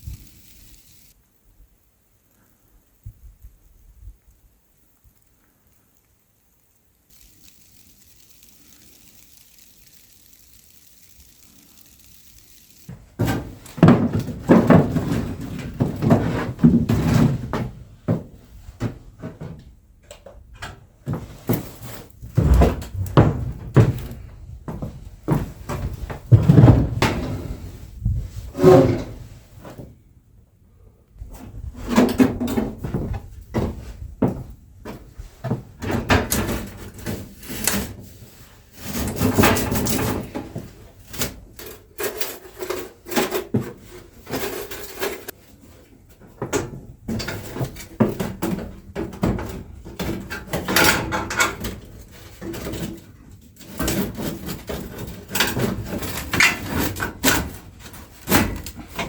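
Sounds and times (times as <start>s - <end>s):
wooden objects knocking and scraping: 12.9s - 19.6s.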